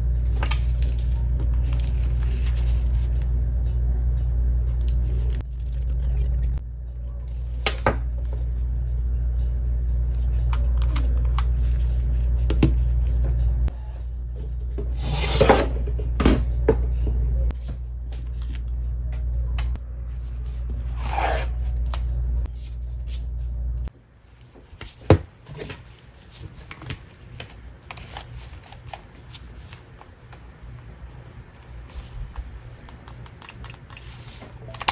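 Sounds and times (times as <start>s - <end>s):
low steady hum: 0.0s - 24.4s
plastic parts clicking and scraping: 31.6s - 34.9s.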